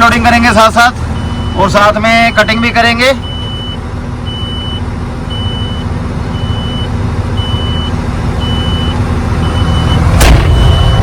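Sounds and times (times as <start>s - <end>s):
heavy diesel machinery rumbling: 0.0s - 11.0s
back-up alarm beeping: 1.1s - 11.0s
sudden loud burst of noise: 10.1s - 11.0s.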